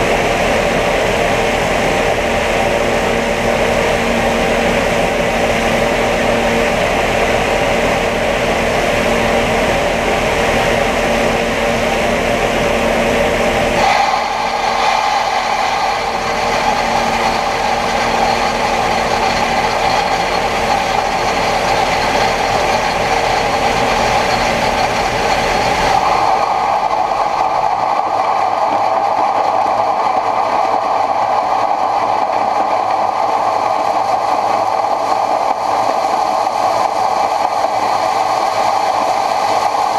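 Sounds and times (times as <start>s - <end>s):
combine harvester running: 0.0s - 30.2s.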